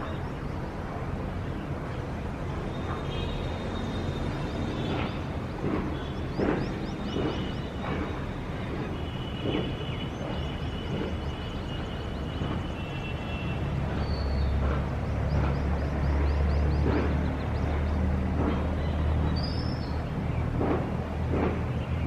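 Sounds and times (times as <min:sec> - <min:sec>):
distant traffic rumble: 0:00.0 - 0:22.0
birds chirping: 0:03.0 - 0:08.2.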